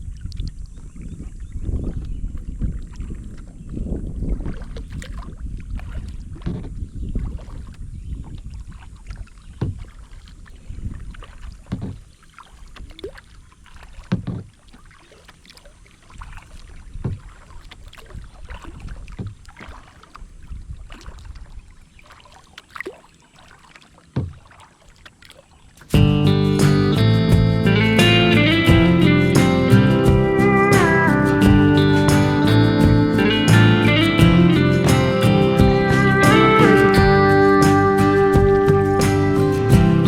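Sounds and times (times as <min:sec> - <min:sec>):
paddle strokes in water: 0:00.0 - 0:26.0
paddle knocks: 0:14.0 - 0:14.6, 0:17.0 - 0:18.2, 0:24.1 - 0:25.2
low rumble: 0:26.0 - 0:40.0.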